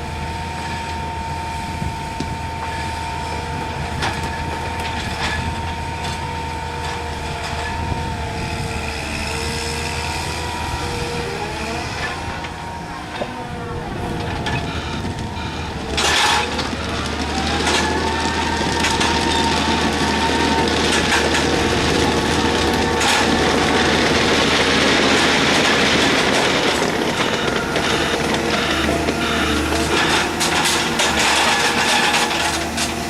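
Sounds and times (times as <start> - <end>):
hydraulic excavator whining: 0.0 - 33.0.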